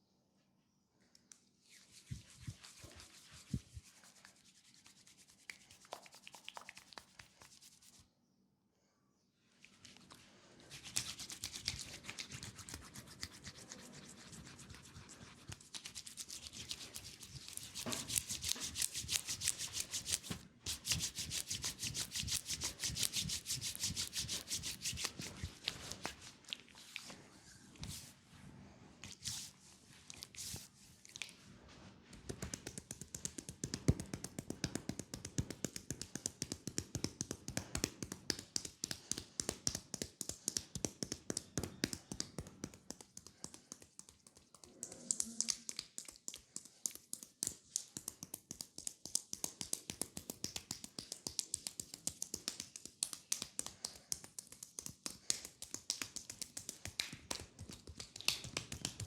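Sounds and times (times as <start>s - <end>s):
hands tapping on leg: 32.2s - 59.0s.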